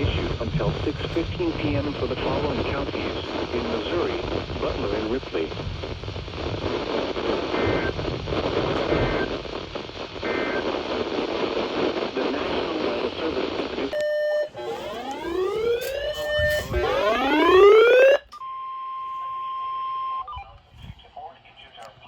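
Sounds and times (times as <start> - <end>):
radio static: 0.0 - 18.3, 20.4 - 22.0
paired-tone data bursts: 13.7 - 18.7
rising electronic alert tone: 14.5 - 18.2.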